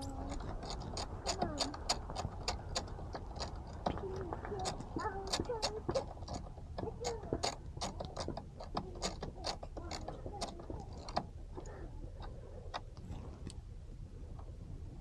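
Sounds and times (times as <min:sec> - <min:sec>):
socket ratchet clicking: 0:04.6 - 0:11.3.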